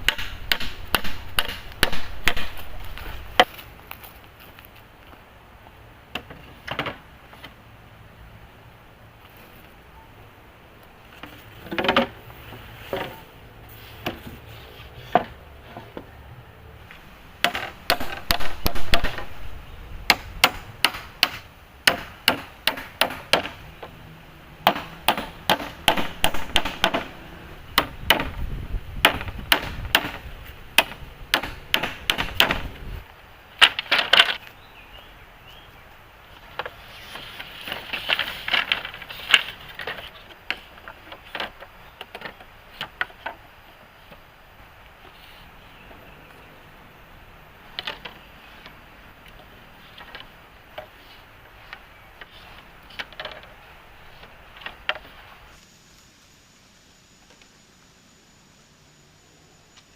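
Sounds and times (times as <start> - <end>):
hand tool striking wood: 0.0 - 3.6, 17.4 - 19.3, 20.1 - 23.6, 24.6 - 27.2, 27.8 - 28.4, 29.0 - 30.2, 30.8 - 32.7.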